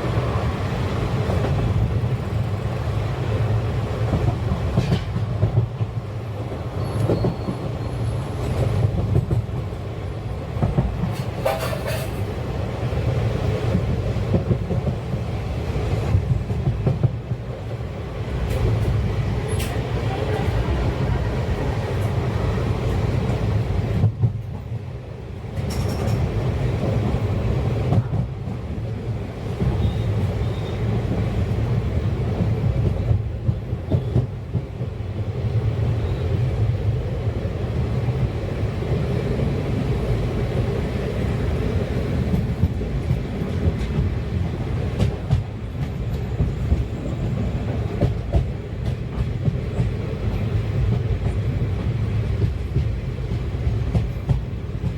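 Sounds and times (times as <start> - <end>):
train wheels rumbling on track: 0.0 - 54.9
rail-joint clatter: 4.1 - 9.8, 10.6 - 12.4, 18.4 - 20.7, 25.5 - 27.2, 32.4 - 34.8, 42.1 - 54.9
wheel squeals: 6.8 - 8.3.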